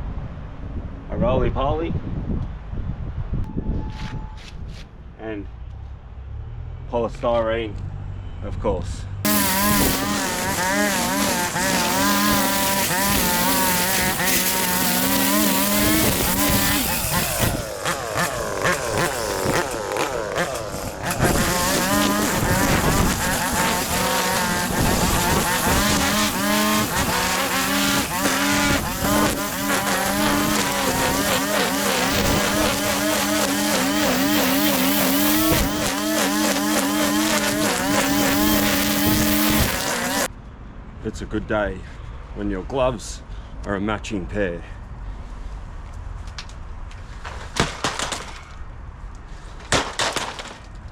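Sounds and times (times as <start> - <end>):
two-stroke engine running: 9.3 - 40.3.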